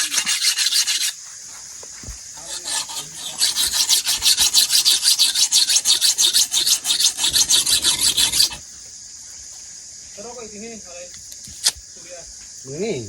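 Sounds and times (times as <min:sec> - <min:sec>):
rough rasping scraping: 0:00.0 - 0:08.6.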